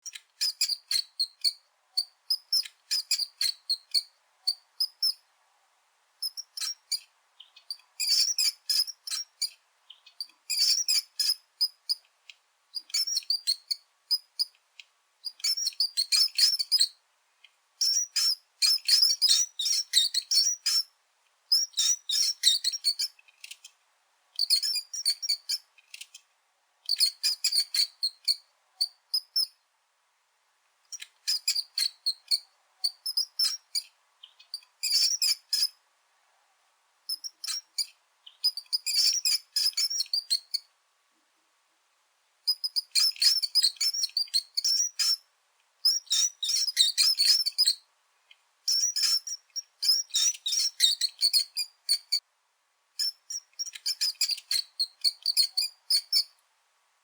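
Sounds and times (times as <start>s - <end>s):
mice squeaking: 0.0s - 5.2s, 6.2s - 12.0s, 12.8s - 14.5s, 15.2s - 17.0s, 17.8s - 20.9s, 21.5s - 23.7s, 24.4s - 26.2s, 30.9s - 35.8s, 37.1s - 40.6s, 42.5s - 45.2s, 45.8s - 47.8s, 48.7s - 52.2s, 53.0s - 56.3s.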